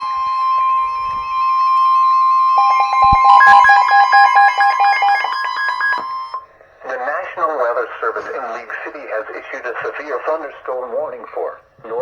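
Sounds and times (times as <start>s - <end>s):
steady warning alarm tone: 0.0s - 6.6s
fast two-pitch beeping alert: 0.1s - 6.4s.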